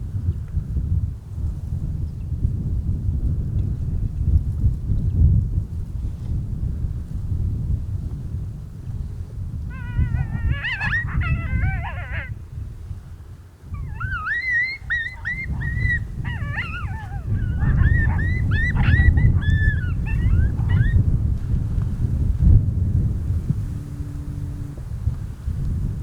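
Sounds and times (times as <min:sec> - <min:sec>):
wind rumble on microphone: 0:00.0 - 0:26.0
coyotes yipping and howling: 0:09.7 - 0:12.4, 0:13.7 - 0:21.0.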